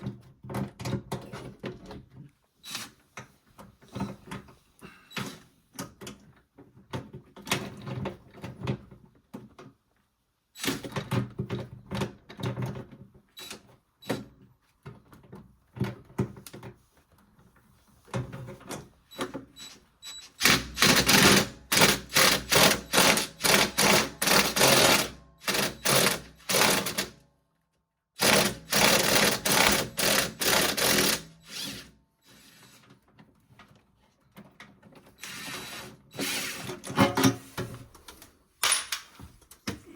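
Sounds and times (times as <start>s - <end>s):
hand tools clicking and knocking: 38.0s - 39.9s.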